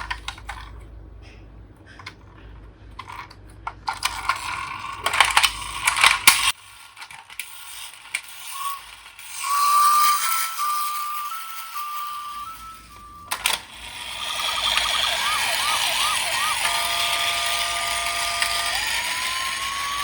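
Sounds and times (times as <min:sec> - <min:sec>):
plastic toy cars clicking: 0:00.0 - 0:00.9, 0:01.8 - 0:20.0
toy electronic siren: 0:08.4 - 0:20.0.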